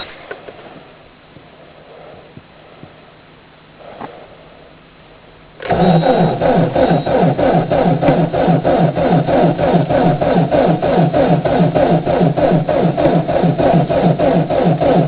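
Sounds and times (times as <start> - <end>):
starter cranking diesel engine: 5.6 - 15.0.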